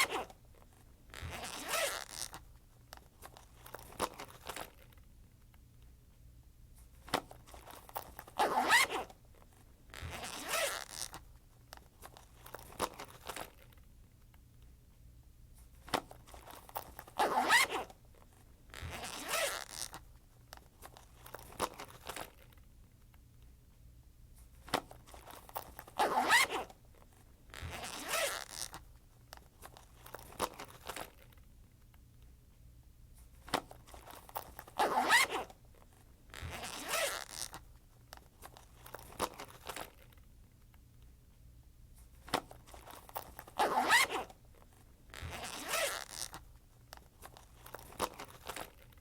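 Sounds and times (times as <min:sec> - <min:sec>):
backpack zipper zipping: 0:00.0 - 0:00.4, 0:01.1 - 0:02.4, 0:08.2 - 0:09.1, 0:09.9 - 0:11.2, 0:16.8 - 0:18.0, 0:18.7 - 0:20.0, 0:25.2 - 0:26.8, 0:27.5 - 0:28.8, 0:33.9 - 0:35.6, 0:36.3 - 0:37.6, 0:42.7 - 0:44.4, 0:45.1 - 0:46.4
small clicks and rustles: 0:00.0 - 0:49.0.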